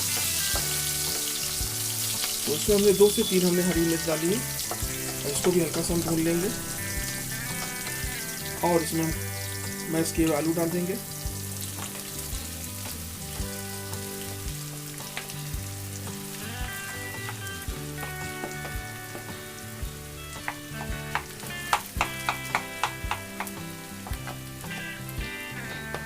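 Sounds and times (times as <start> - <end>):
oil sizzling in a pan: 0.0 - 26.0
spatula stirring: 3.4 - 8.6
spatula knocking against pan: 20.4 - 25.0.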